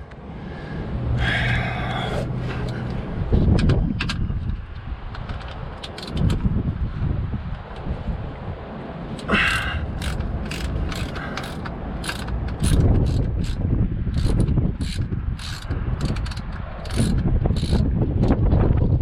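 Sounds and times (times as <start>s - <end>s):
low rumble: 0.0s - 8.5s
ratchet wrench clicking: 5.2s - 6.4s, 9.3s - 17.9s.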